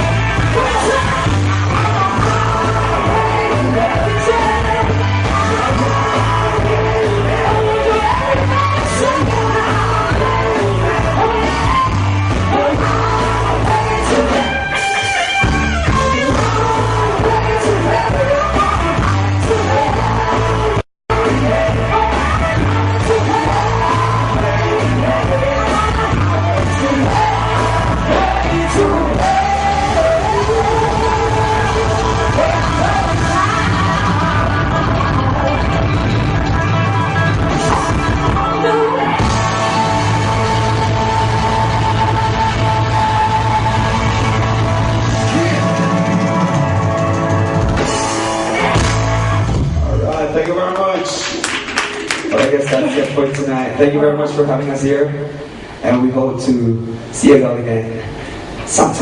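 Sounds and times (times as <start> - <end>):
person singing: 0.0 - 36.7, 37.7 - 47.0
live rock band playing: 0.0 - 50.4.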